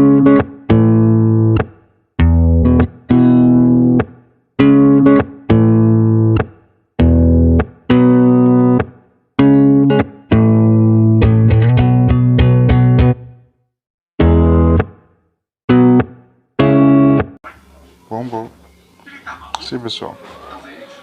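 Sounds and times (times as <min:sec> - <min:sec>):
electric guitar chords: 0:00.0 - 0:13.4, 0:14.2 - 0:15.0, 0:15.7 - 0:17.4.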